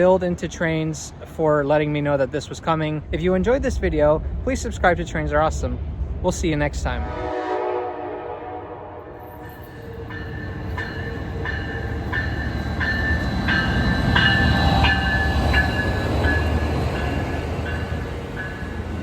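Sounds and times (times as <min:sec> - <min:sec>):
train rolling past: 0:00.0 - 0:19.0
locomotive bell ringing: 0:09.2 - 0:19.0.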